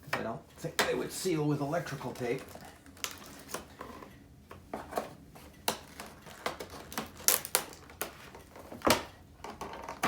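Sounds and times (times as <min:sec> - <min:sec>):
clicks and rustles of packaging: 0:02.0 - 0:10.0.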